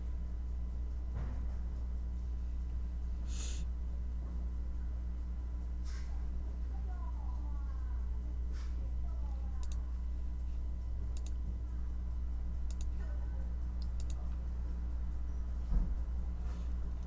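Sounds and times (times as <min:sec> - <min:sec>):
low room hum: 0:00.0 - 0:17.0
keyboard keys clicking: 0:09.6 - 0:09.8, 0:11.2 - 0:11.4, 0:12.7 - 0:13.0, 0:13.8 - 0:14.2.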